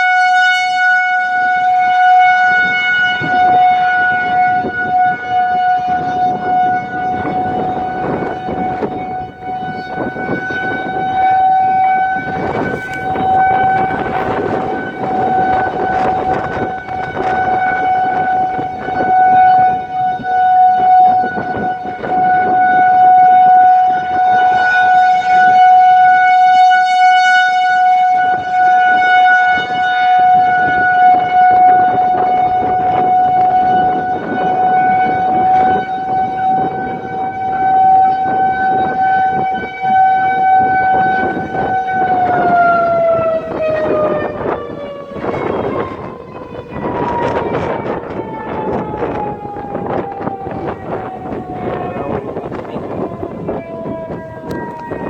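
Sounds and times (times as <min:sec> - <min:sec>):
rotating siren steady tone: 0:00.0 - 0:55.0.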